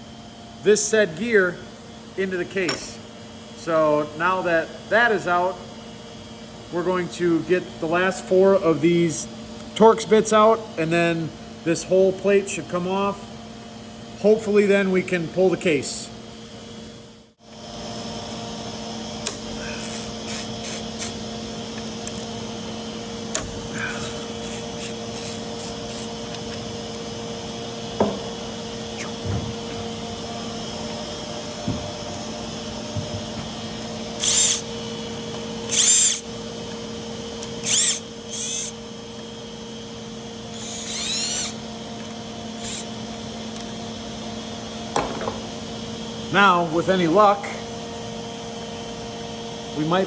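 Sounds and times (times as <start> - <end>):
power tool whirring: 19.2 - 45.9.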